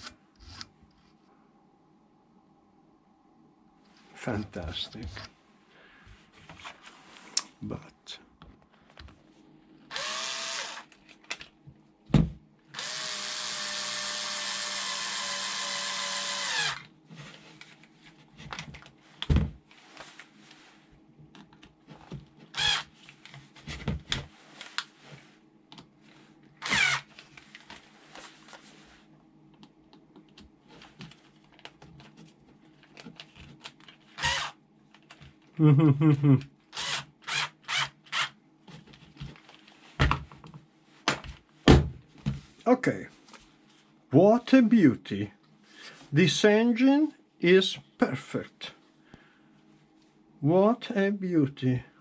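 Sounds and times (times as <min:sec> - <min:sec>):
electric screwdriver whine: 0:09.9 - 0:10.9, 0:12.8 - 0:16.9, 0:22.6 - 0:22.9, 0:26.6 - 0:27.1, 0:34.2 - 0:34.6.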